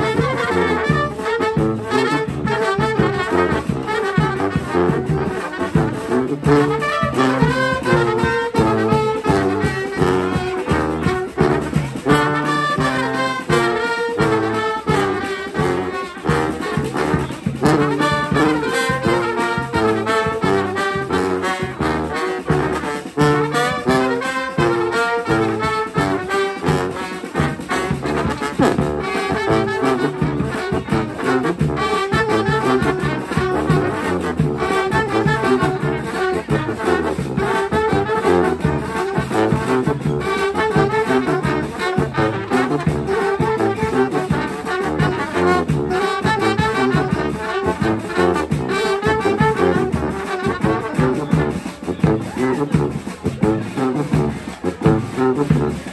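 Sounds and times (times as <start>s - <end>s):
brass band playing: 0.0s - 55.9s.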